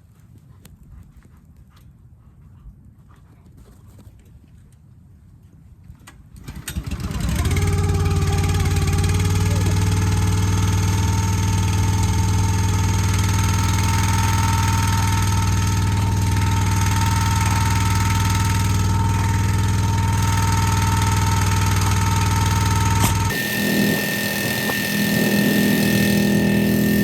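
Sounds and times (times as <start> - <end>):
log splitter engine idling: 6.4 - 27.0
high whine: 7.5 - 27.0.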